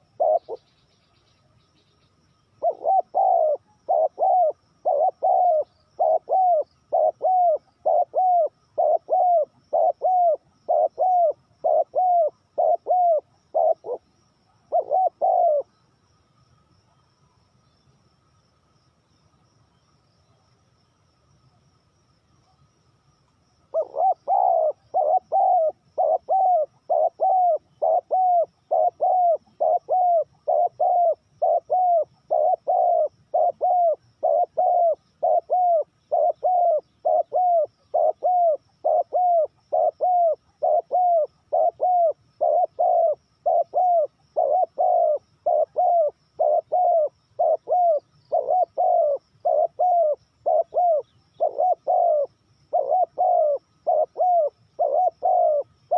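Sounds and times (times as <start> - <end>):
dove cooing: 0.0 - 0.8, 2.6 - 15.7, 23.7 - 55.9.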